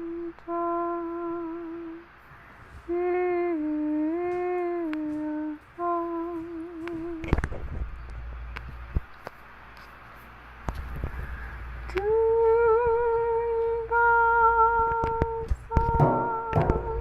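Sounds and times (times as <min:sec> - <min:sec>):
person humming a slow melody: 0:00.0 - 0:02.1, 0:02.9 - 0:07.4, 0:11.9 - 0:17.0.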